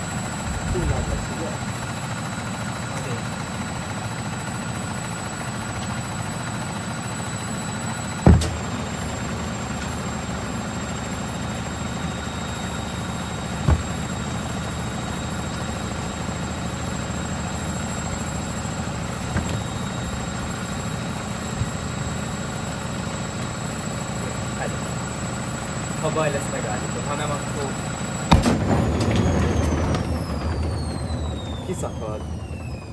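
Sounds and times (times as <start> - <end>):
washing machine humming: 0.0 - 25.8, 26.4 - 32.9
sharp thump: 8.2 - 8.8, 13.6 - 14.1, 19.3 - 19.8, 28.3 - 30.3
light knocks: 13.6 - 14.2, 19.3 - 19.7.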